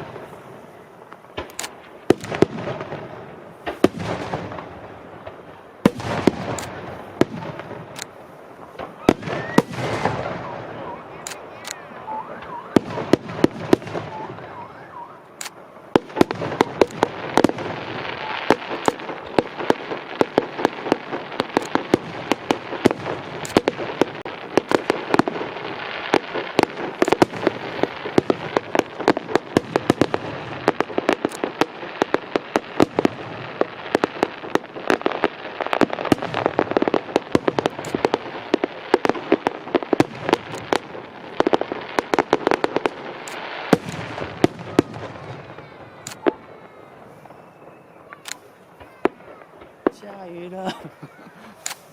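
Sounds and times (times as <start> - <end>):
fireworks bangs and crackling: 0.0 - 51.9.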